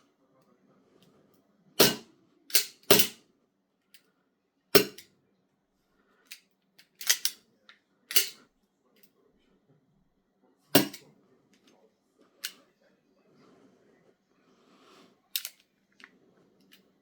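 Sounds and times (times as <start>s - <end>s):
airsoft pistol shots: 1.8s - 2.0s, 2.6s - 3.2s, 4.8s - 5.0s, 10.8s - 11.0s
metallic clicks of gun action: 1.8s - 3.2s, 6.3s - 7.4s, 8.1s - 8.4s, 15.4s - 15.6s.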